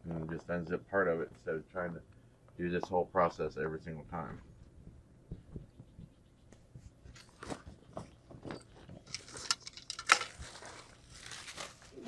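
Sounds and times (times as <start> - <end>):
packaging crinkling and rustling: 9.0 - 12.0
sharp crackle of packaging: 9.2 - 12.0.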